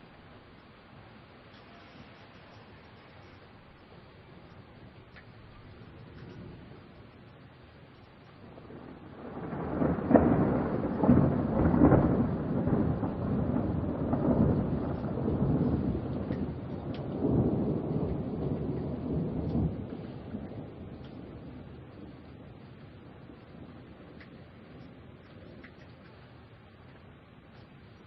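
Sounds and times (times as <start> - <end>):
steady rain: 0.0 - 28.0
thunder rolling: 3.8 - 28.0
sharp thunder claps: 8.4 - 26.0.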